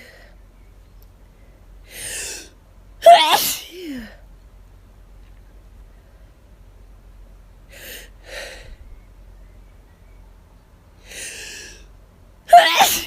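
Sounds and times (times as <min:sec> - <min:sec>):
person breathing hard: 0:01.8 - 0:02.5, 0:07.7 - 0:08.9, 0:11.0 - 0:11.9
loud sneeze: 0:03.0 - 0:04.2, 0:12.5 - 0:13.0.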